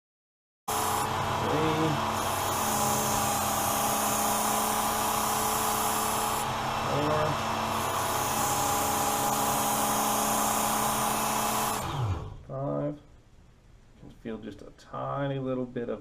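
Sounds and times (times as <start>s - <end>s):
blade grinding on belt: 0.7s - 12.4s
electric motor running: 0.7s - 12.4s.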